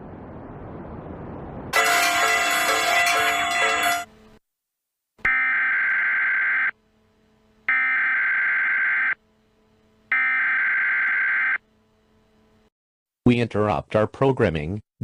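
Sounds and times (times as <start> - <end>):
music: 1.8 - 4.1.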